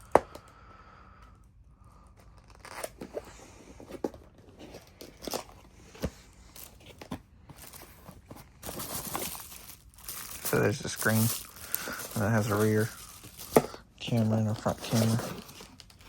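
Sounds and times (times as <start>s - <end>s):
packaging crinkling and tearing: 2.2s - 3.3s, 4.6s - 16.0s.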